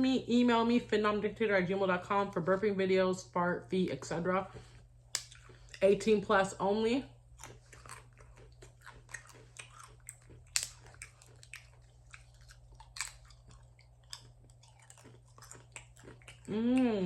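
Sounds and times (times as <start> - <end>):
close-miked chewing: 4.6 - 6.2, 7.3 - 17.0.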